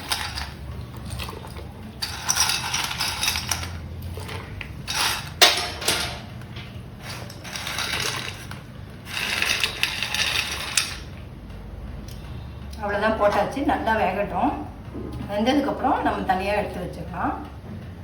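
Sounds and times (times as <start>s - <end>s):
dry pasta clattering into pot: 0.0s - 11.1s.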